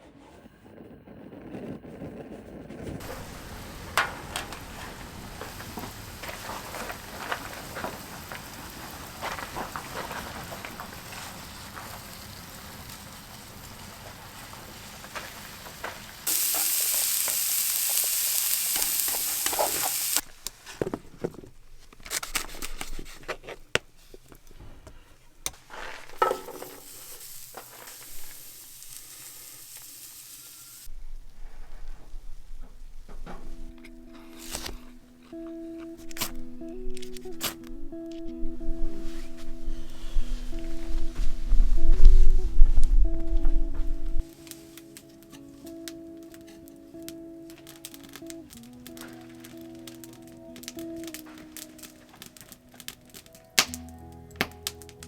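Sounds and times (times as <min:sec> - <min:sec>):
meat and peppers sizzling in pan: 0:03.0 - 0:20.2, 0:26.2 - 0:30.9, 0:39.0 - 0:52.7
loud sizzling hiss: 0:03.0 - 0:20.3, 0:26.2 - 0:30.9, 0:38.9 - 0:53.9
utensil clinking: 0:26.2 - 0:29.2.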